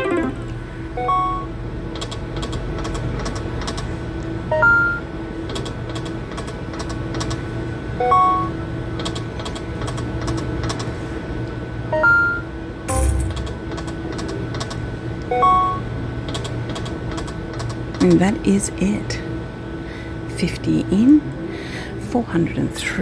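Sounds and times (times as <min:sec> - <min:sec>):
rising electronic chime: 0:12.9 - 0:13.7
steady machine hum: 0:12.9 - 0:14.3.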